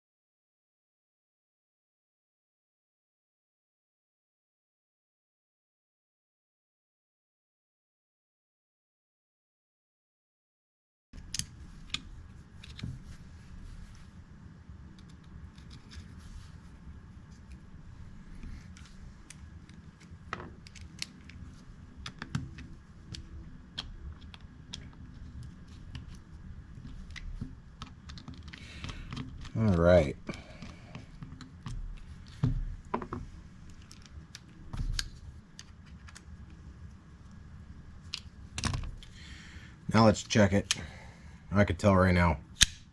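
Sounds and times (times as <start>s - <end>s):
low steady hum: 11.2s - 42.9s.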